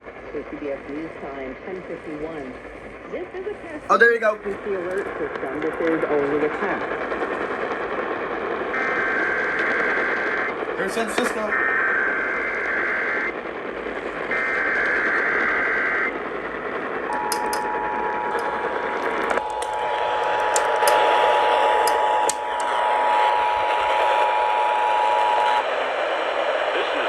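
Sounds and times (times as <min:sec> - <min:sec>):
radio receiver hiss and static: 0:00.0 - 0:27.0
two-tone attention signal: 0:17.1 - 0:18.4
screeching digital header tones: 0:17.1 - 0:18.6.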